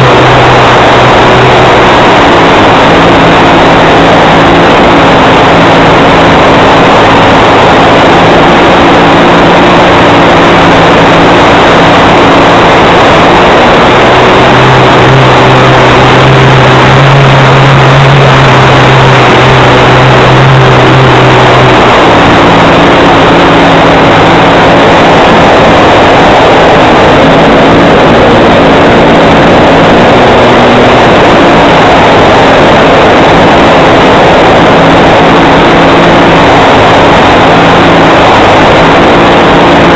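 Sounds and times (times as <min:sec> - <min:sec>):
model plane engine running: 0:00.0 - 0:39.9.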